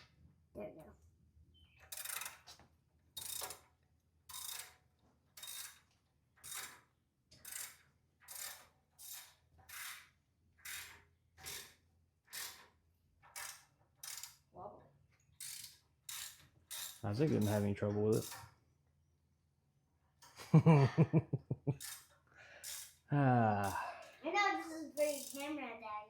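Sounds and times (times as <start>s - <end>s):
ratchet wrench clicking: 1.8s - 2.6s, 3.2s - 3.7s, 4.3s - 4.8s, 5.4s - 5.8s, 6.4s - 6.8s, 7.4s - 12.7s, 13.3s - 14.5s, 15.4s - 18.6s, 21.7s - 23.8s, 25.0s - 25.6s.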